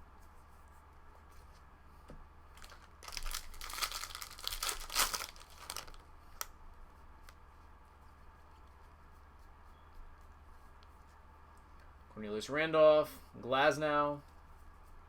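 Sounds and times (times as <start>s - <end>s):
foil wrapper crinkling and tearing: 2.5s - 6.5s.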